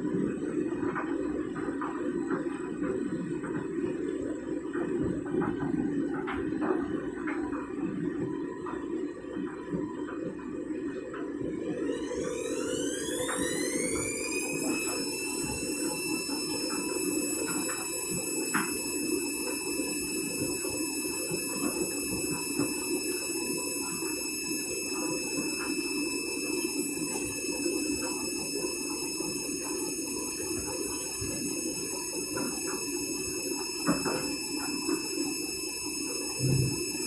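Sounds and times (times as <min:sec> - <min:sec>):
washing machine motor whine: 0:00.0 - 0:37.0
rushing hum of spinning drum: 0:11.4 - 0:19.4.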